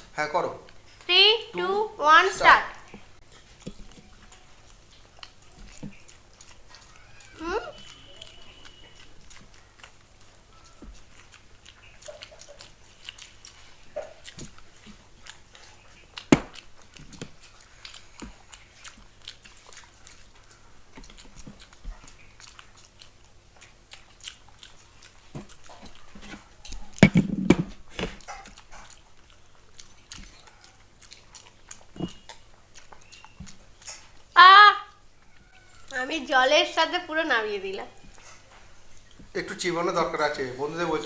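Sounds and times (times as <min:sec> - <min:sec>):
chewing: 0:00.0 - 0:01.1, 0:02.8 - 0:41.0
mouth clicks: 0:02.9 - 0:26.1, 0:26.7 - 0:34.1
swallowing: 0:03.0 - 0:34.3.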